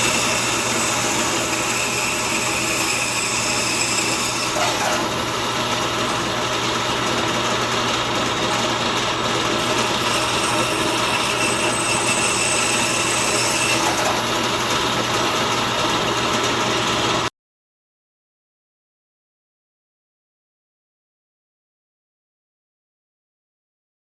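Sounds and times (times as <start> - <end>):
band saw cutting wood: 0.0 - 17.3.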